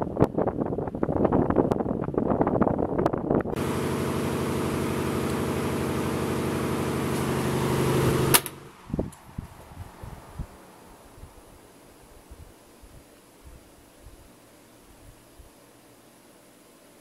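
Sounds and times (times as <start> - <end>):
air gusting against microphone: 0.0 - 14.3
table fan running: 0.0 - 17.0
fan switch click: 5.1 - 5.5, 7.0 - 9.3.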